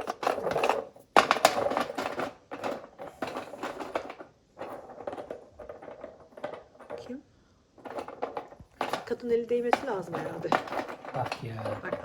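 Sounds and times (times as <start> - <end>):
stones rattling on metal tray: 0.0 - 7.2, 7.8 - 12.0.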